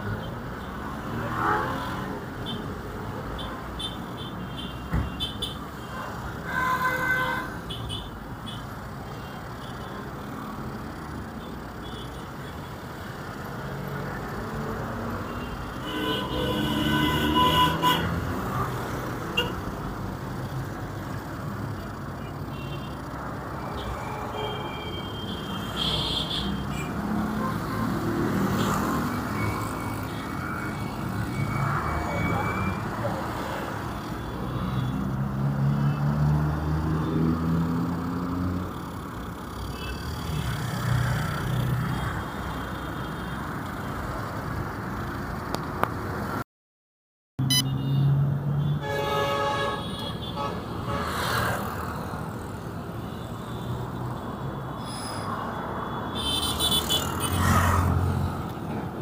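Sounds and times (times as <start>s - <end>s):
vehicle engines passing: 0.0s - 24.4s, 25.0s - 46.4s, 47.4s - 59.0s
car horn toots: 15.8s - 18.2s, 47.4s - 48.1s.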